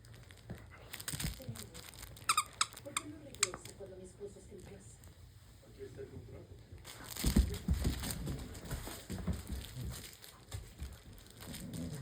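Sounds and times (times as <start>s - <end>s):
dog chewing and crunching food: 0.0s - 3.1s, 6.8s - 12.0s.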